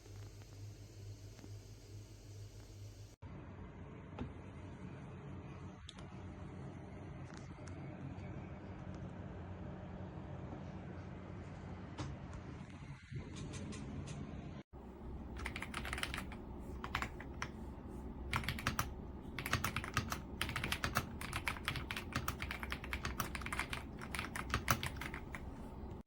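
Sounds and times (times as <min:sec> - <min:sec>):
mechanical keyboard typing: 0:15.3 - 0:17.6, 0:18.2 - 0:25.6.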